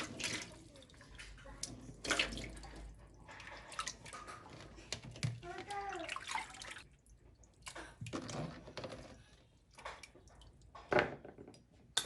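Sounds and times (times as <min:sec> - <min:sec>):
water splashing and dripping: 0:00.0 - 0:08.4, 0:09.7 - 0:10.9.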